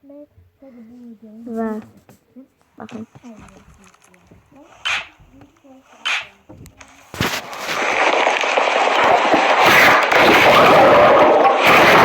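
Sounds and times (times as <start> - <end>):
slime crackling and popping: 6.9 - 12.0.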